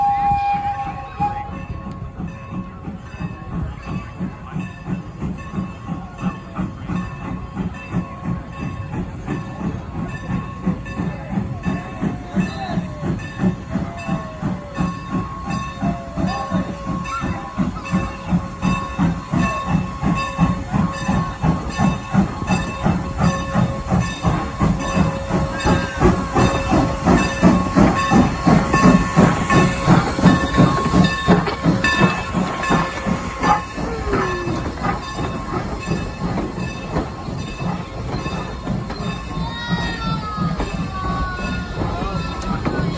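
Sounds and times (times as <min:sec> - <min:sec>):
steam locomotive chuffing: 0:00.0 - 0:42.9
steam hissing: 0:02.5 - 0:42.9.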